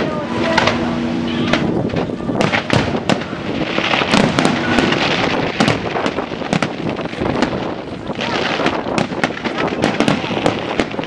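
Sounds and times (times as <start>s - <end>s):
firework bangs: 0.0s - 11.0s
firework crackle: 0.1s - 11.0s.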